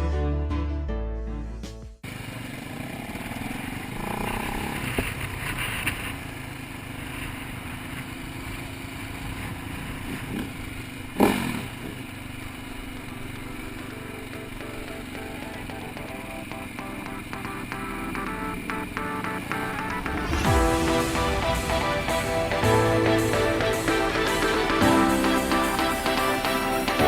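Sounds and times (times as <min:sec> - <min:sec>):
background music: 0:00.0 - 0:02.0, 0:14.0 - 0:27.0
dirt bike engines running: 0:02.0 - 0:20.0.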